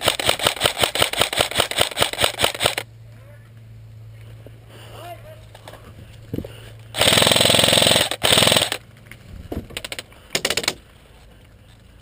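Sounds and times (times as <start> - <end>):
airsoft gun firing bursts: 0.0 - 2.8, 7.0 - 8.8.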